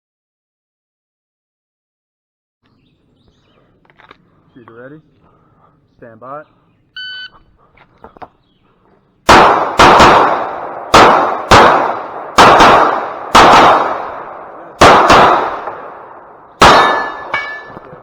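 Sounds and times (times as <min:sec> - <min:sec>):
start beep: 0:07.0 - 0:07.4
pistol shots echoing: 0:09.3 - 0:18.0.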